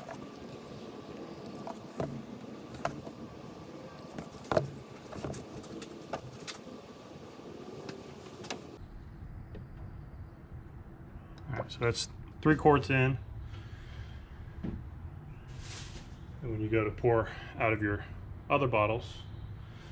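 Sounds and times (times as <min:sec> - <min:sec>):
plastic jug knocks and clicks: 0:00.0 - 0:00.5, 0:01.5 - 0:03.3, 0:04.0 - 0:06.6.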